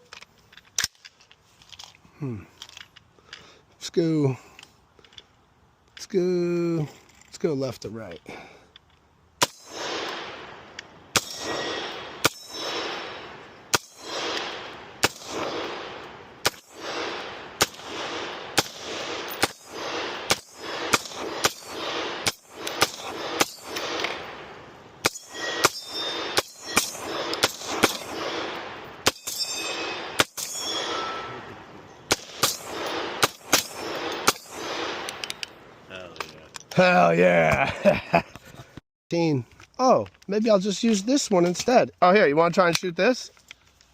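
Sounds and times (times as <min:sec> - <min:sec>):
pistol shots with echo: 0:09.4 - 0:31.5, 0:32.1 - 0:35.2
brief metallic ring: 0:29.2 - 0:31.5.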